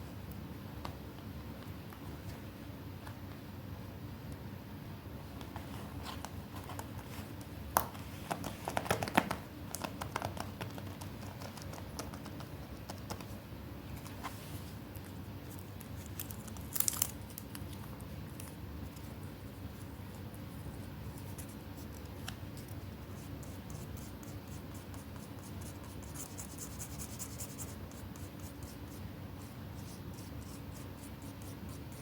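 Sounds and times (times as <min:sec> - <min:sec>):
steady low hum: 0:00.0 - 0:32.0
paper crinkling and rustling: 0:15.5 - 0:19.0.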